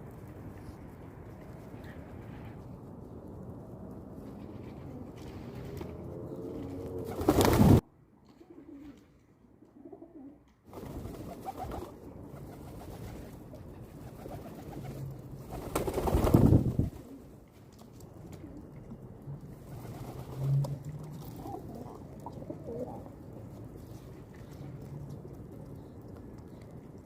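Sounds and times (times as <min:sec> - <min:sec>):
pigeons cooing: 0:09.8 - 0:10.4, 0:21.1 - 0:23.4.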